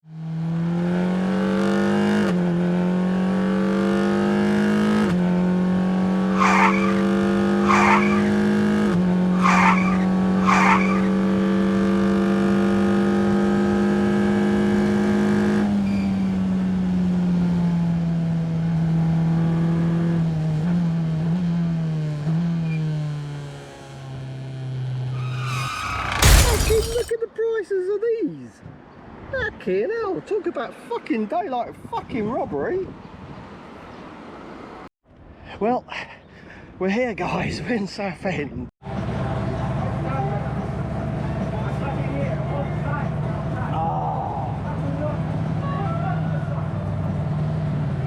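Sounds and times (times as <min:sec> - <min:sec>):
car engine revving: 0:00.3 - 0:15.7
short squeals: 0:06.3 - 0:08.4, 0:09.4 - 0:11.2, 0:25.1 - 0:27.1.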